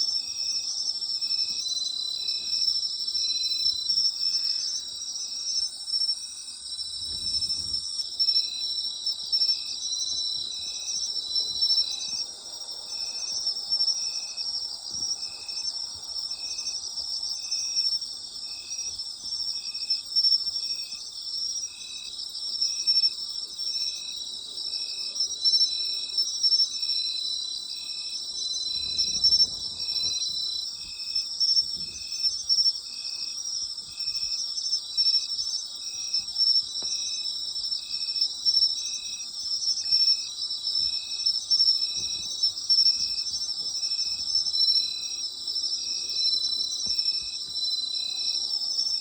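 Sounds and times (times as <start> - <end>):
crickets trilling: 0.0 - 49.0
insect chirping low note: 28.4 - 32.2.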